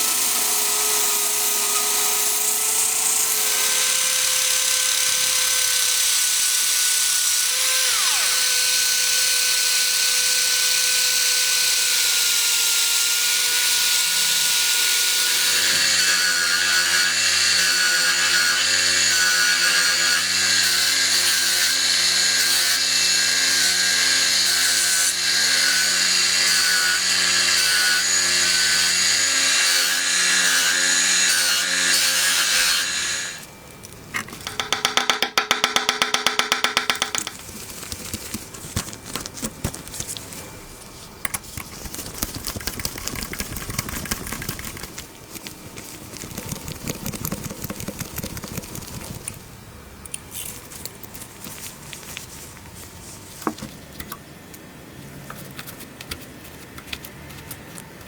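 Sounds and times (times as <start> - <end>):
power tool whining: 1.2 - 10.7, 21.7 - 33.5.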